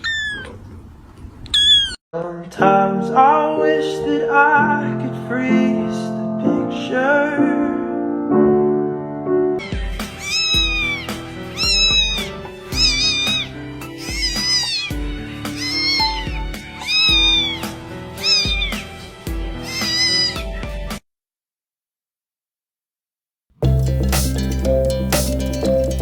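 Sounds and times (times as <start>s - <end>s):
cat meowing: 0.0s - 0.7s, 1.5s - 2.0s, 9.6s - 20.6s
background music with steady beat: 9.7s - 21.0s, 23.6s - 26.0s.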